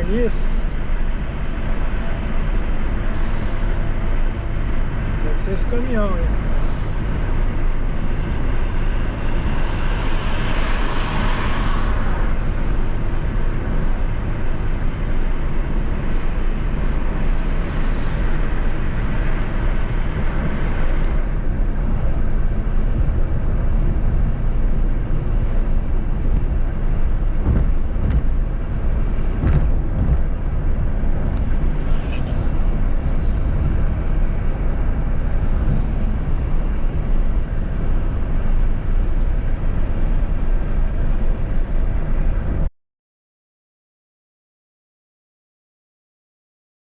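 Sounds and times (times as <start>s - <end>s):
car driving at highway speed: 0.0s - 42.7s
vehicle passing with hiss: 9.3s - 12.6s.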